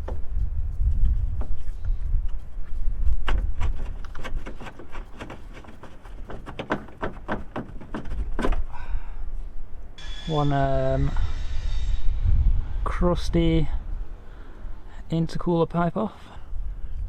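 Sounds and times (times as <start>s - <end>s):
low rumble: 9.2s - 15.1s.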